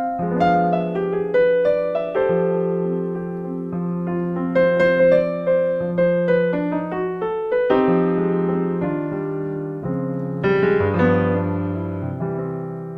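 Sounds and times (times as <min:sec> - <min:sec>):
piano playing chords: 0:00.0 - 0:12.9.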